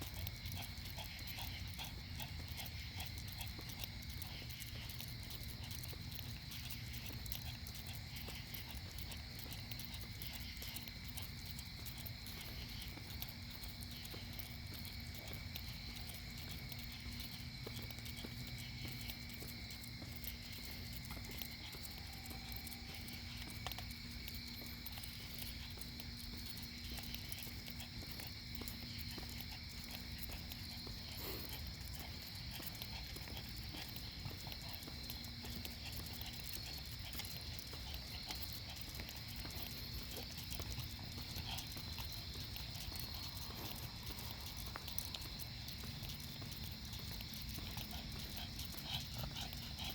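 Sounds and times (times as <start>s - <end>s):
insects chirping: 0.0s - 49.9s
footsteps: 27.1s - 49.9s.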